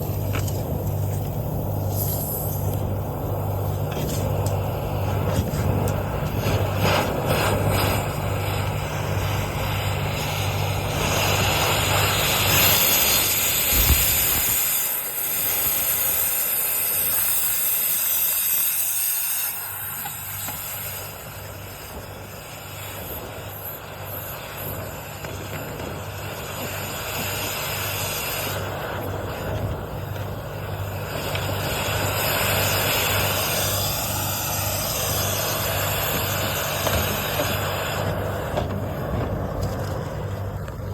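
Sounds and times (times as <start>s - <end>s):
low pulsing hum: 0.0s - 17.5s.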